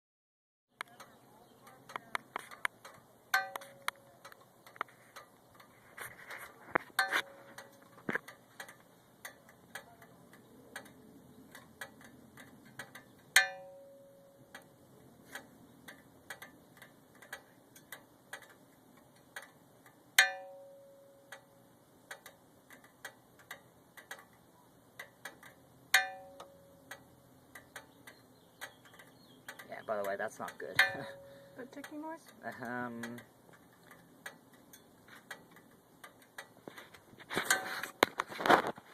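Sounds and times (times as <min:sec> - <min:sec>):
metallic clink ringing: 0:13.4 - 0:14.4, 0:20.2 - 0:21.4.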